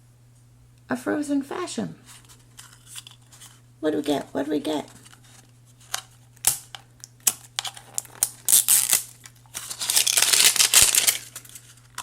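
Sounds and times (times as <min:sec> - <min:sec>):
plastic packaging crinkling and tearing: 0:04.9 - 0:12.0.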